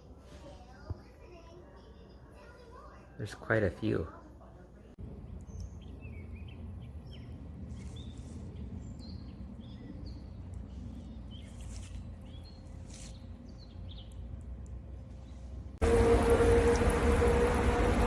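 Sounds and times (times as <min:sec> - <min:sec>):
small birds chirping: 0:05.0 - 0:15.8
steady low rumble: 0:05.0 - 0:18.0.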